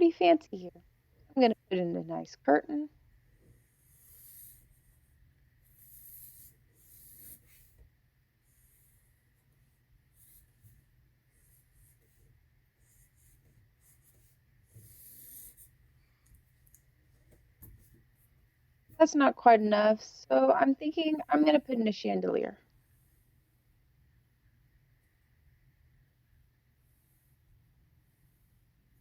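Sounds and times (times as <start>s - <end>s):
pencil strokes on paper: 3.4s - 15.9s, 20.9s - 21.9s.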